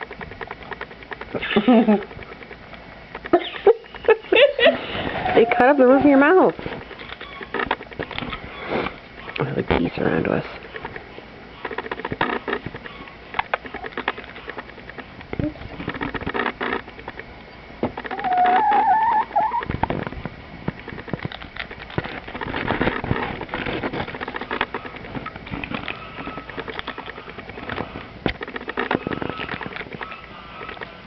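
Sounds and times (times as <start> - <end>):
wavering warbling call: 18.1 - 19.7.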